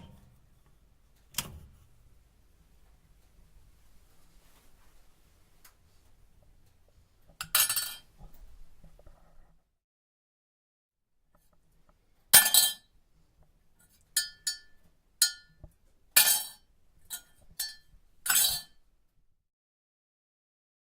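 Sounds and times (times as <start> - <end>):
crockery clinking: 7.4 - 8.2, 12.4 - 12.9, 13.9 - 15.6, 16.2 - 18.8.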